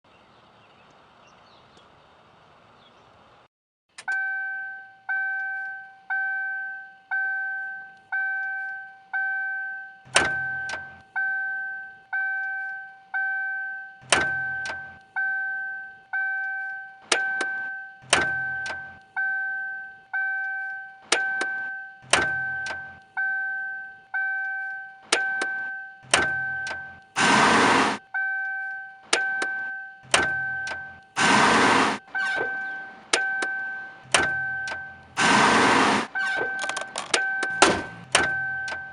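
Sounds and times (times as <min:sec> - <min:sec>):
two-tone car warning chime: 0:04.0 - 0:27.1, 0:28.0 - 0:31.2, 0:32.0 - 0:35.2, 0:36.1 - 0:38.9
noisy bursts: 0:27.2 - 0:28.0, 0:31.2 - 0:32.6, 0:35.1 - 0:36.2
car controls clicking and knocking: 0:36.4 - 0:38.9.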